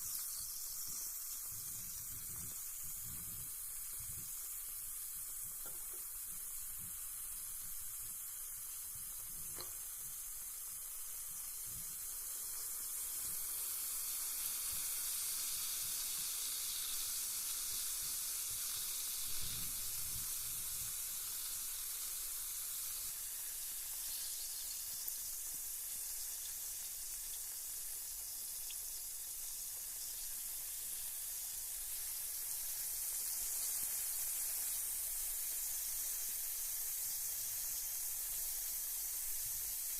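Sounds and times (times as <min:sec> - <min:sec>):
bath bomb fizzing: 0:00.0 - 0:39.9.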